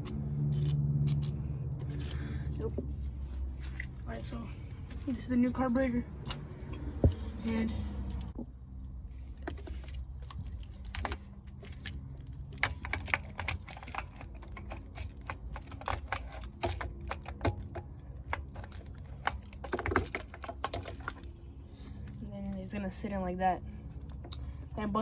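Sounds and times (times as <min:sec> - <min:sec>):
clicks of small parts handled: 0:00.0 - 0:02.3.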